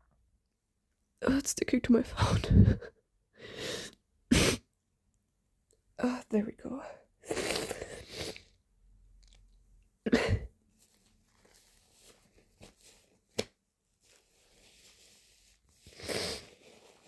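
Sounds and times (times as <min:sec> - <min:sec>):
hand slapping bare thigh: 0:13.3 - 0:13.6.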